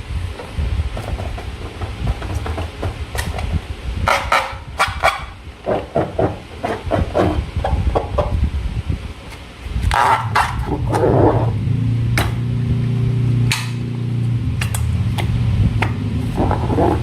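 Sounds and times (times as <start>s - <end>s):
low buzzing tone: 0.0s - 17.0s.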